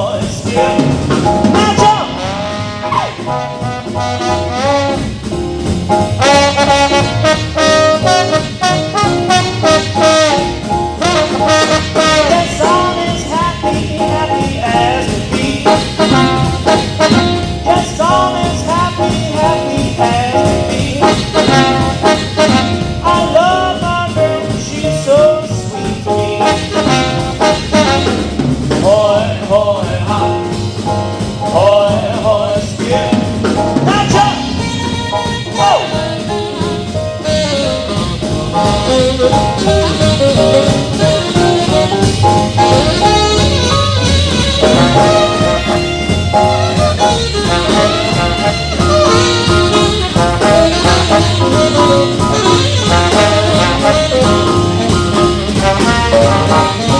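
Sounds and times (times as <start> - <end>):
swing band playing: 0.0 - 56.9
trumpet and trombone melody: 0.1 - 56.9.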